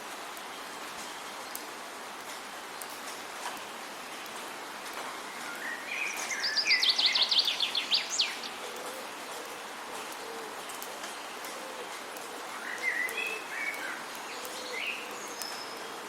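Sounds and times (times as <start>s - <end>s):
steady background hiss: 0.0s - 16.0s
songbird singing: 5.3s - 8.8s, 12.5s - 16.0s.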